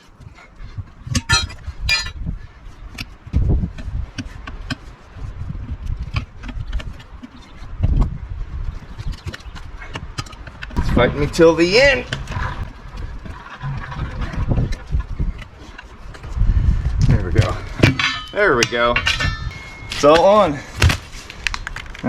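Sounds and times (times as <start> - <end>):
metal pry bar clinks and scrapes: 1.1 - 2.2, 17.4 - 20.7
ringing metal strikes: 1.2 - 2.2, 17.8 - 20.5.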